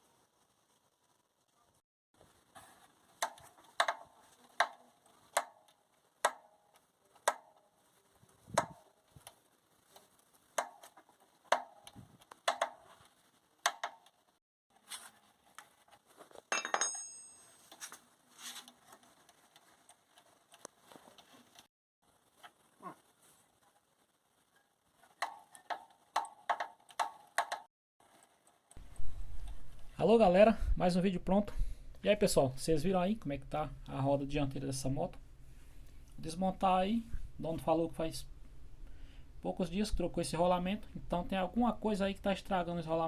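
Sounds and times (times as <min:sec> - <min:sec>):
metallic clinks and knocks: 0:16.5 - 0:17.8.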